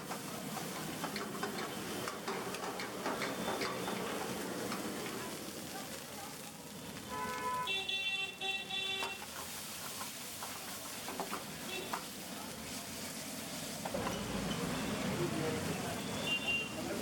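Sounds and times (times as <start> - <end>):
food sizzling in a pan: 0.0 - 17.0
vehicle horn honking: 7.1 - 9.2, 11.7 - 12.0.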